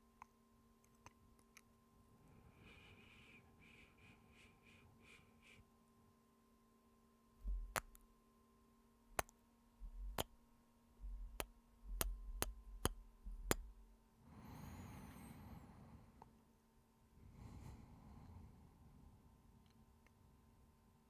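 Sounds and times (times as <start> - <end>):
soft breathing: 2.2 - 5.7, 14.2 - 16.2, 17.2 - 19.2.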